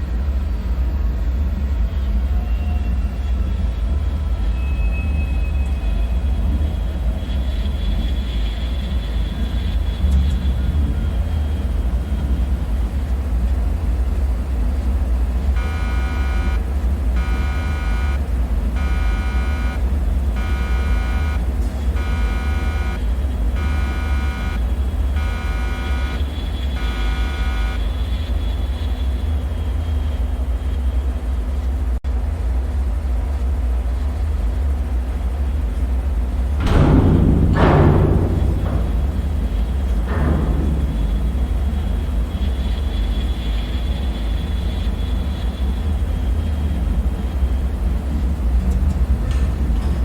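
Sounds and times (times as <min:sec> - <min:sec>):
electronic alarm beeping: 0:15.6 - 0:18.2, 0:18.8 - 0:21.4, 0:22.0 - 0:24.6, 0:25.2 - 0:27.8
deep rumbling drone: 0:35.7 - 0:49.9.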